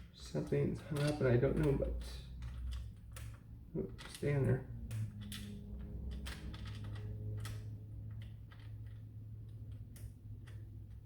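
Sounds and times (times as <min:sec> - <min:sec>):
plastic parts clicking and knocking: 0:00.0 - 0:11.0.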